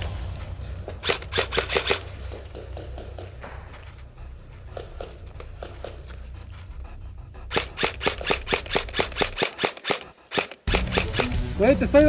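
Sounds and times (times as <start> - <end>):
low steady rumble: 0.0 - 9.2
airsoft gun firing rapidly: 1.0 - 2.1, 7.5 - 11.5.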